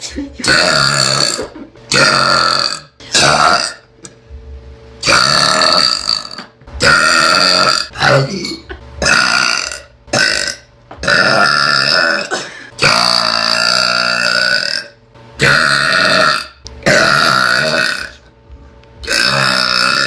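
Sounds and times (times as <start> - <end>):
girl burping loudly: 0.4 - 3.9, 5.0 - 18.2, 19.0 - 20.0.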